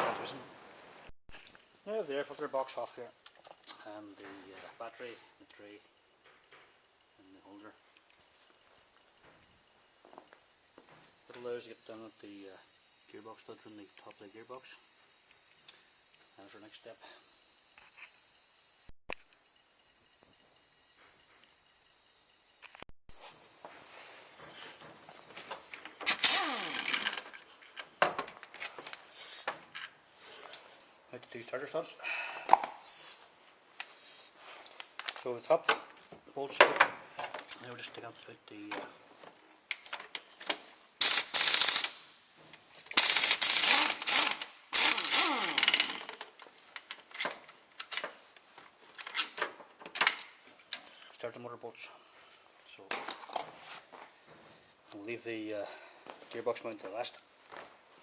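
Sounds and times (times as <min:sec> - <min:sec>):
power tool whirring: 0:25.2 - 0:27.4, 0:41.0 - 0:42.0, 0:42.9 - 0:46.2
metallic clicks and tool rattles: 0:42.8 - 0:48.2.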